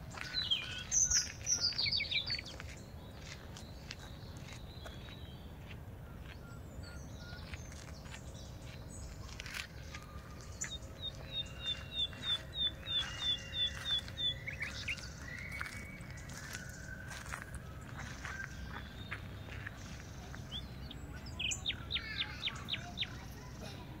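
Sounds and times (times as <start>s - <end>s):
birds singing: 0.0s - 24.0s
bird chirping rapidly: 10.5s - 17.4s, 18.0s - 23.3s.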